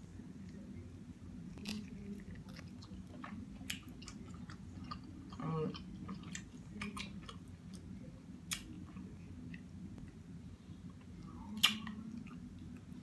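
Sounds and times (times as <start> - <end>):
person chewing: 1.5 - 7.9.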